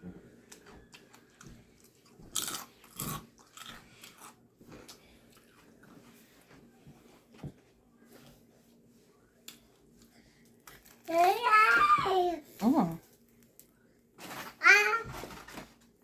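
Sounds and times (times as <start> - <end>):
chewing and crunching sandwich: 0.0 - 6.5, 9.4 - 11.4.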